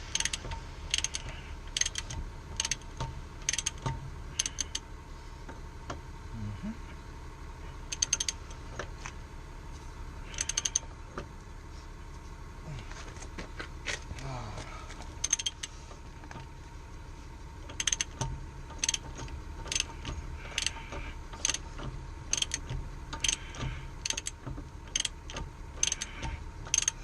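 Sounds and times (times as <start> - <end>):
ratchet wrench clicking: 0.1 - 4.8, 7.9 - 8.5, 10.3 - 10.9, 15.2 - 15.7, 17.7 - 27.0.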